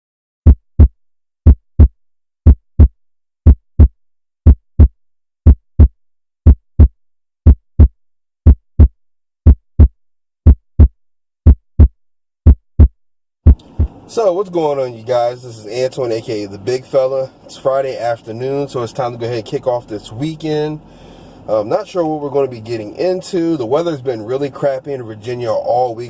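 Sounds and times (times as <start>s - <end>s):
heartbeat double thump: 0.4s - 14.0s.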